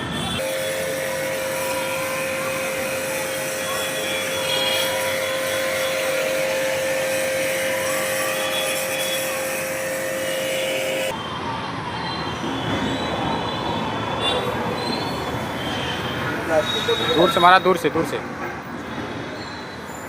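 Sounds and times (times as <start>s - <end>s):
loud hiss: 0.4s - 11.1s
small machine humming: 0.4s - 11.1s.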